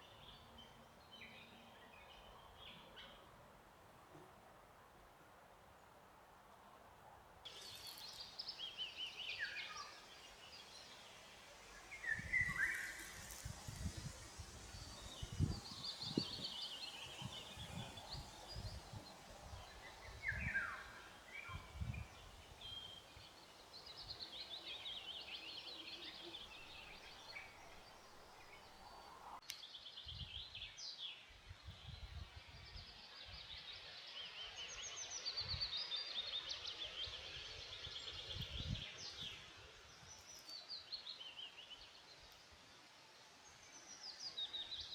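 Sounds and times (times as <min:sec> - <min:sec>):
songbirds singing: 0:07.5 - 0:31.2.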